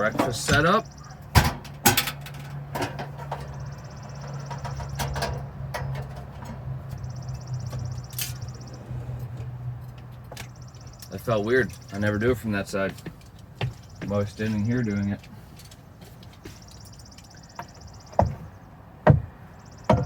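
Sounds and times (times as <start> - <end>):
knocks and clicks of handling: 0.0 - 8.5, 12.9 - 14.2.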